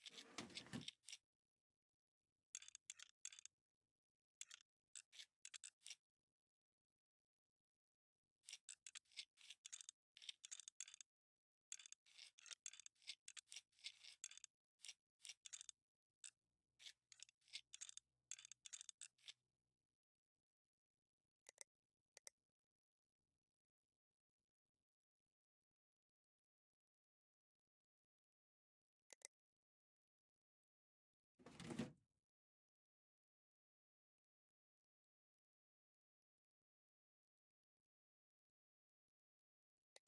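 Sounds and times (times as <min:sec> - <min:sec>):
short sharp clicks and scrapes: 0:00.0 - 0:01.2.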